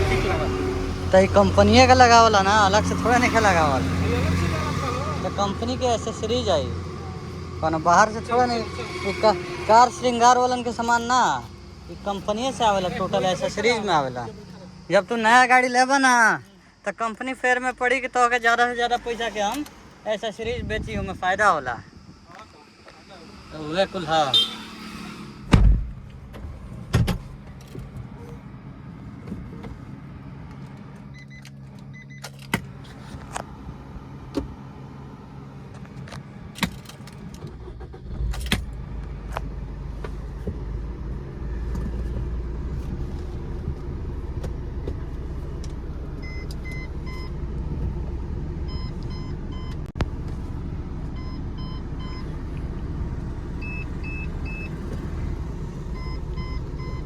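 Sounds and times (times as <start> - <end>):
diesel engine starting and idling: 0.0 - 57.0
car electronic beeper: 24.0 - 24.7, 31.1 - 32.4, 46.2 - 47.4, 48.7 - 49.8, 51.2 - 52.3, 53.6 - 55.0, 55.8 - 57.0.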